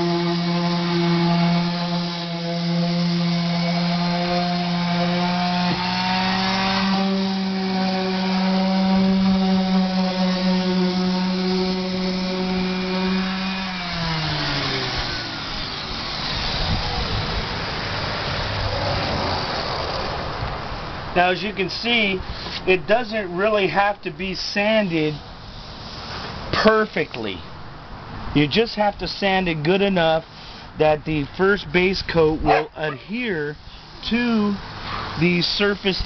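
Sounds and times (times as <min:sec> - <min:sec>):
power sander whining: 0:00.0 - 0:18.6.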